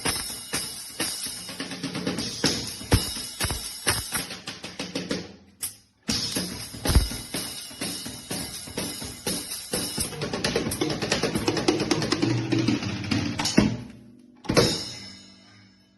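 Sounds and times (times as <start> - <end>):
drum kit groove: 0.0 - 15.2.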